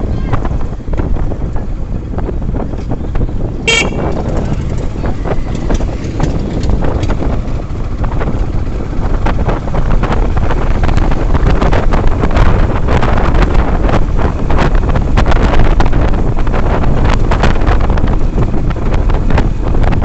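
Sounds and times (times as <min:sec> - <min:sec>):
road and traffic noise: 0:00.0 - 0:20.0
wind rushing over microphone: 0:00.0 - 0:20.0
short horn toot: 0:03.7 - 0:04.3.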